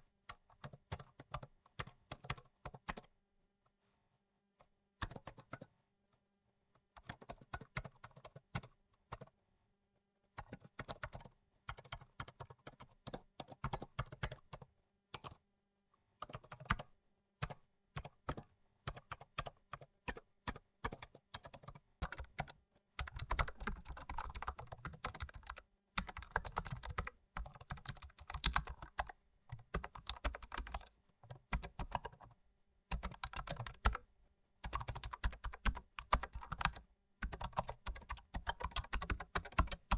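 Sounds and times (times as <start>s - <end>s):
typing on computer keyboard: 0.2s - 3.1s, 5.0s - 5.7s, 7.0s - 9.3s, 10.4s - 15.4s, 16.2s - 39.9s.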